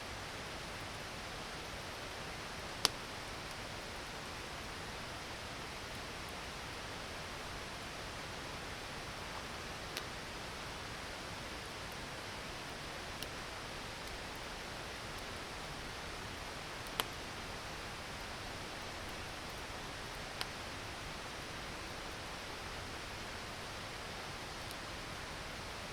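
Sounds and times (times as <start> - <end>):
campfire popping: 13.1 - 23.2.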